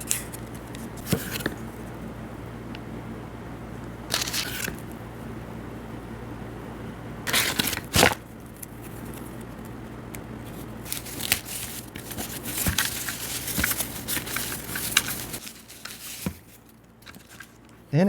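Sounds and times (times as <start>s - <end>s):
packaging ripping: 7.3s - 8.2s, 10.8s - 17.6s
packaging crackling and rustling: 10.5s - 17.6s.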